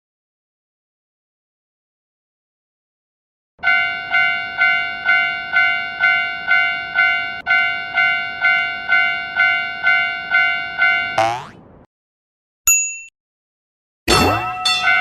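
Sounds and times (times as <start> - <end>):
railroad crossing alarm bell: 3.6 - 11.2, 14.4 - 15.0.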